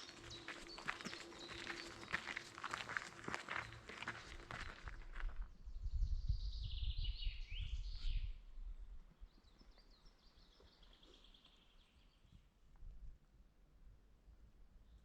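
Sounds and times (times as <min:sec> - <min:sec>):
footsteps on forest floor: 0:00.0 - 0:05.4
songbird singing: 0:00.0 - 0:12.5.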